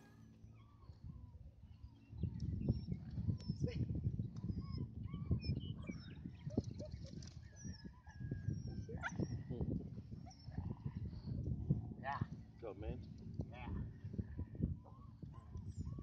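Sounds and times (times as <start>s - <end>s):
puppies squeaking and whining: 4.4s - 11.2s.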